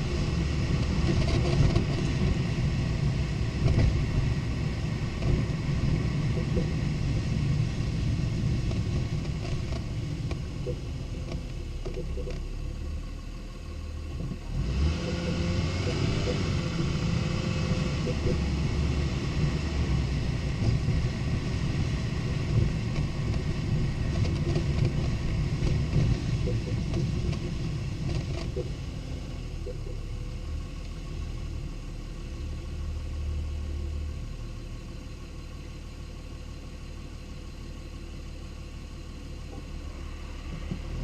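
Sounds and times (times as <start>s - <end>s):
car engine: 0.0s - 41.0s
road noise: 0.0s - 41.0s.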